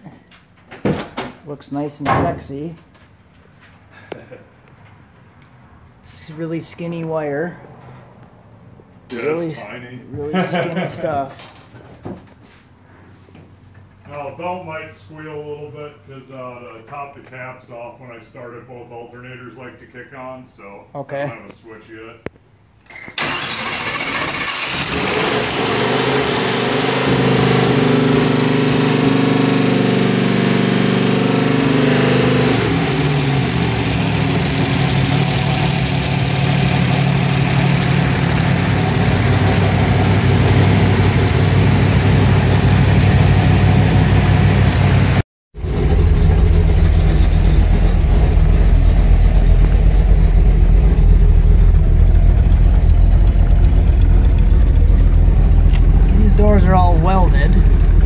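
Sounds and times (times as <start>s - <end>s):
engine starting and running: 22.8s - 58.0s.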